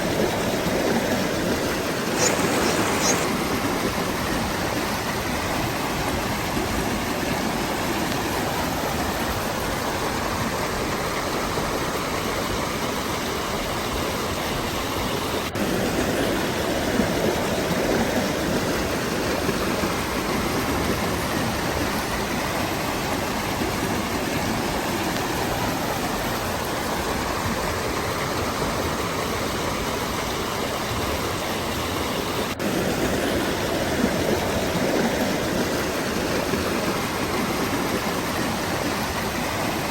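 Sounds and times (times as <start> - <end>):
waterfall rushing: 0.6 - 4.9.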